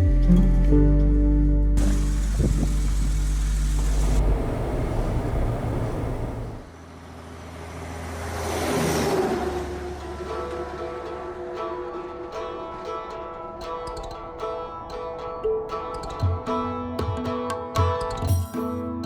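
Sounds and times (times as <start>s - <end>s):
background music: 0.0s - 4.2s, 9.4s - 19.0s
vehicle driving by: 1.8s - 12.2s.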